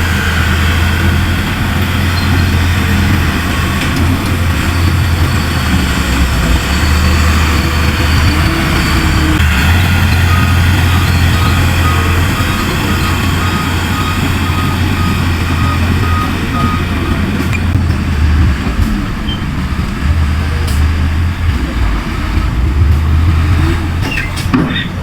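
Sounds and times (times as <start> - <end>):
heavy diesel machinery engine: 0.0 - 25.0
reversing alarm beeping: 0.0 - 25.0.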